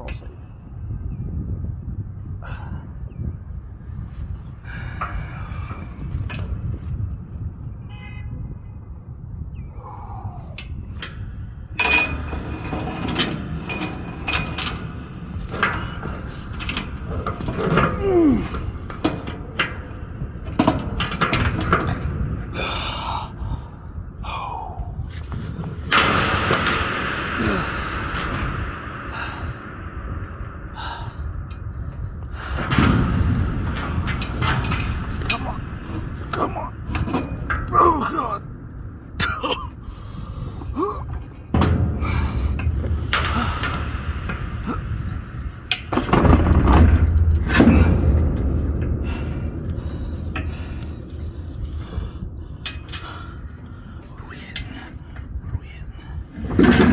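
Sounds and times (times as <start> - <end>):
wind rumble on microphone: 0.0 - 56.9
sharp metal clicks and knocks: 10.6 - 22.8, 25.1 - 39.6
strained breathing and grunts: 15.5 - 19.4, 22.5 - 25.9, 27.4 - 29.6, 32.3 - 45.7.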